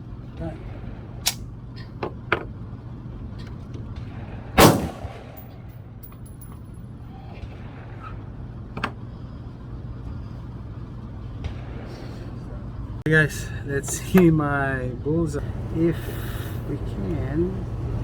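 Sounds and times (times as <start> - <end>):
steady low hum: 0.0 - 18.0
faint gunshots: 4.1 - 5.7, 11.4 - 12.4
loud gunshot: 4.6 - 5.6.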